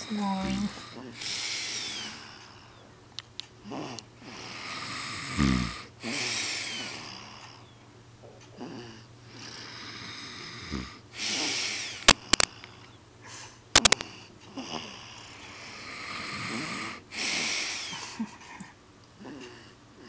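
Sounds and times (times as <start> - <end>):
hissing breaths: 0.0 - 2.9, 3.6 - 7.7, 8.6 - 13.6, 15.4 - 18.2
low rattling snores: 3.7 - 7.6, 8.6 - 11.0, 15.8 - 17.0
sharp clicks: 12.1 - 12.5, 13.8 - 14.0.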